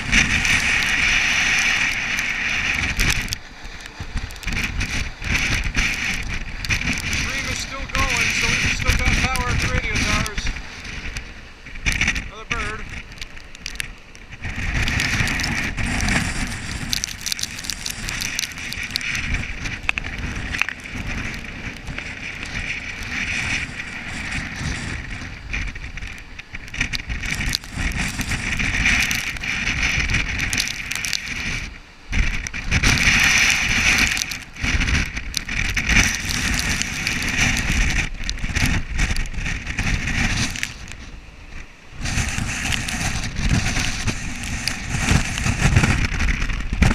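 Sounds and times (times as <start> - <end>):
wind gusting across microphone: 0.0 - 46.9.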